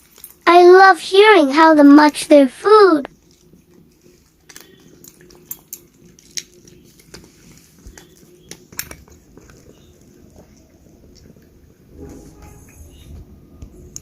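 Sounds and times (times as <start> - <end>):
cats crunching food: 0.0 - 0.4, 3.1 - 11.8.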